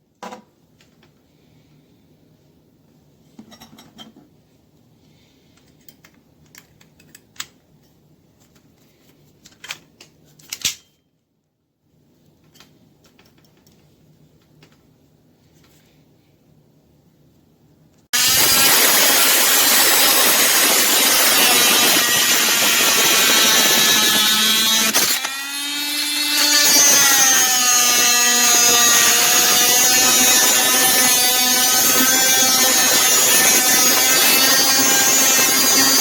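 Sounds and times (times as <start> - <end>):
oscillating multi-tool cutting: 18.2 - 36.0.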